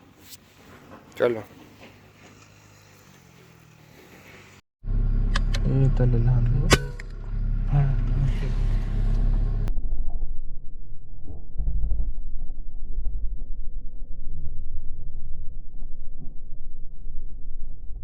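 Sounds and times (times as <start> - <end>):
rustling noise: 0.0 - 4.6
low rumble: 4.8 - 18.0.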